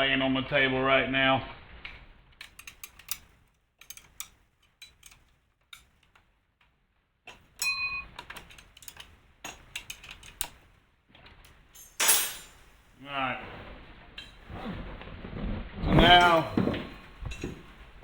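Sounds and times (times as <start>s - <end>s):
ratchet wrench clicking: 2.4s - 5.2s
ringing metal clink: 7.3s - 9.6s, 11.8s - 12.8s.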